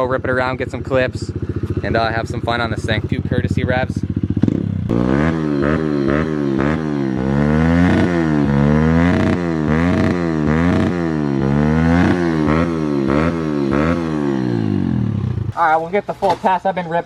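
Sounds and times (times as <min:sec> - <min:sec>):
motorbike engine revving: 0:00.0 - 0:15.6.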